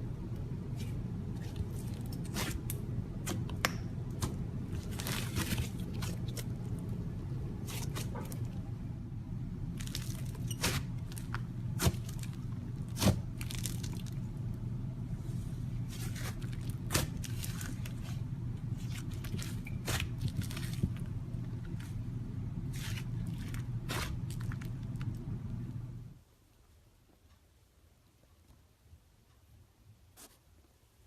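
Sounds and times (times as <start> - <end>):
steady low hum: 0.0 - 26.4
slime squishing and popping: 9.8 - 14.2, 15.9 - 18.1.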